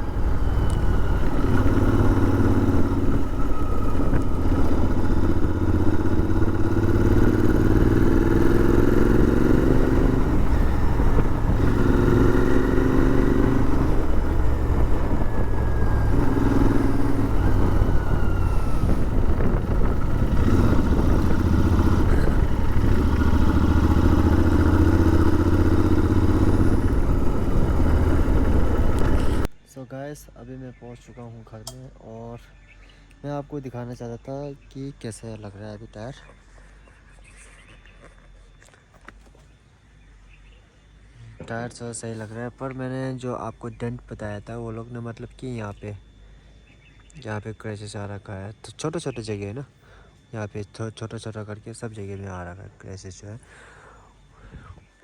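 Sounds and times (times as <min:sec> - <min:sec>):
motorcycle engine accelerating: 0:00.0 - 0:29.6.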